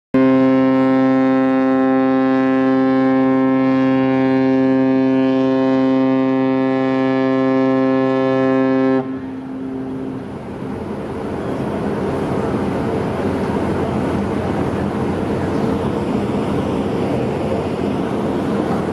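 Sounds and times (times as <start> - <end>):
deep ship horn blast: 0.2 - 10.4
steady rushing noise: 9.3 - 18.9.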